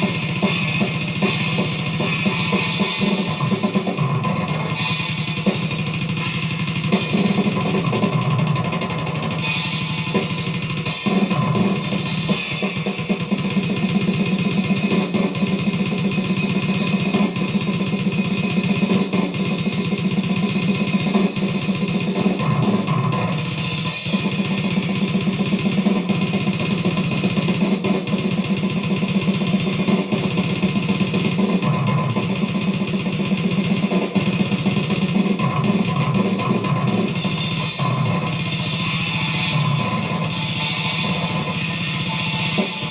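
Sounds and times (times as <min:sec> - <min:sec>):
death metal music: 0:35.4 - 0:42.9.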